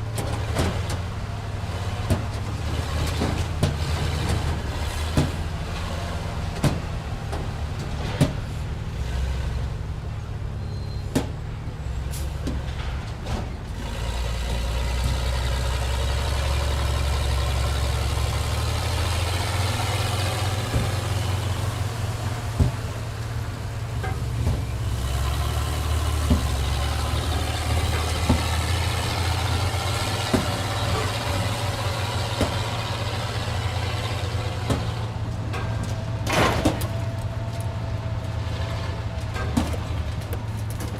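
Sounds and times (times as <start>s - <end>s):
low engine-like rumble: 14.4s - 40.9s.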